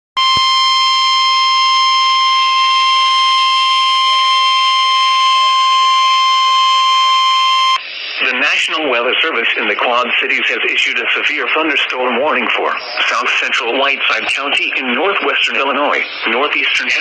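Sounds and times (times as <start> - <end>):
steady buzzy alarm tone: 0.2 - 7.8.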